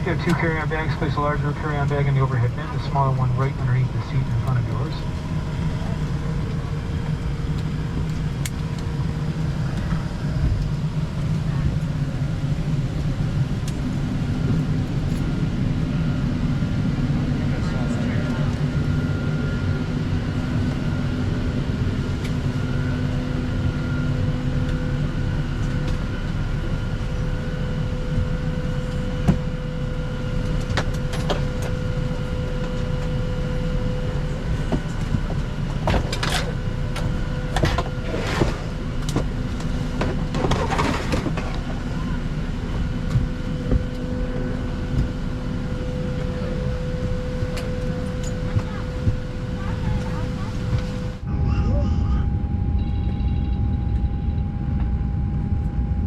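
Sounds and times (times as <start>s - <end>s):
constant whine: 0.0s - 56.0s
cabin ventilation hum: 22.0s - 53.2s.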